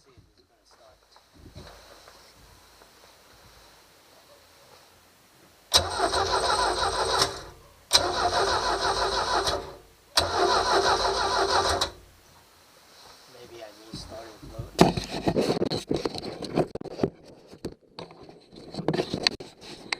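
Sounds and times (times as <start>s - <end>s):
engine starter cranking: 5.7s - 12.0s.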